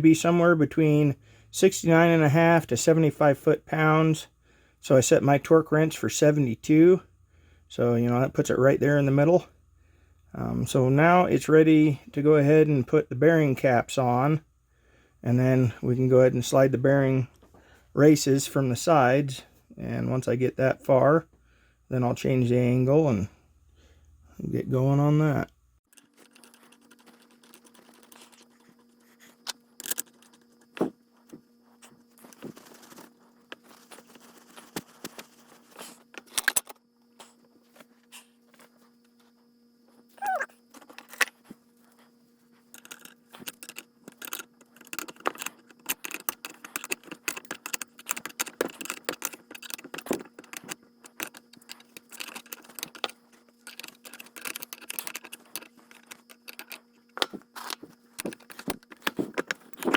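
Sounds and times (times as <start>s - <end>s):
brief squeak: 40.2s - 40.6s.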